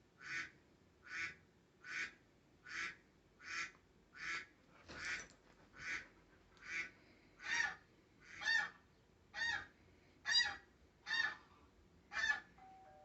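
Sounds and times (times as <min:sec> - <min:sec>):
faint steady tone: 0:12.5 - 0:13.0.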